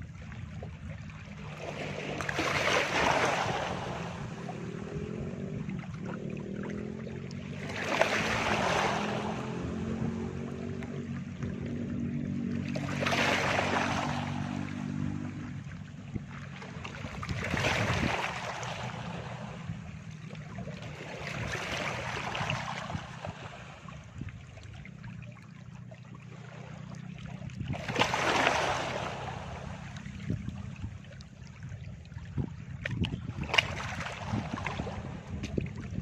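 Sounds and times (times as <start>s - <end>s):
waves washing up on beach: 1.4s - 5.4s, 7.5s - 11.2s, 12.3s - 15.2s, 16.8s - 19.7s, 20.8s - 23.9s, 27.7s - 30.2s.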